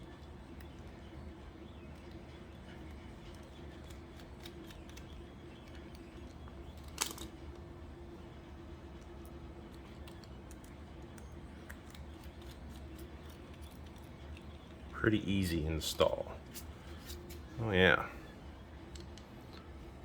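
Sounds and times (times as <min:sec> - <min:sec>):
steady low hum: 0:00.0 - 0:20.0
small parts clicking and tapping: 0:03.3 - 0:07.4.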